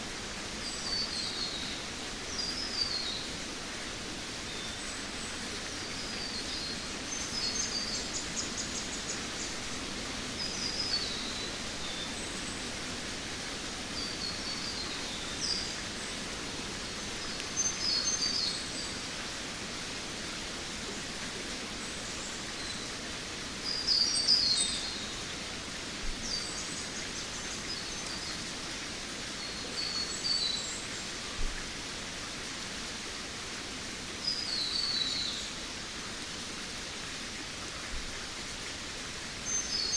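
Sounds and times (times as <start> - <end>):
steady hiss: 0.0 - 39.9.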